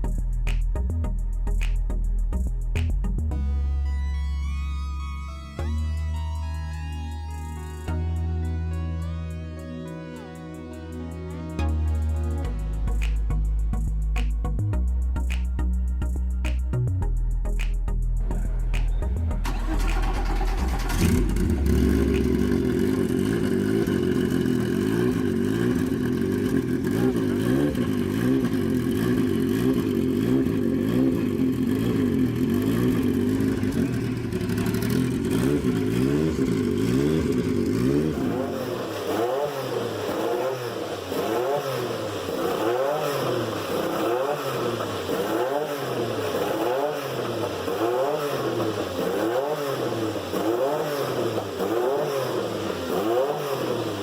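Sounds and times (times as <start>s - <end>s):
race car engine idling: 18.2s - 38.2s.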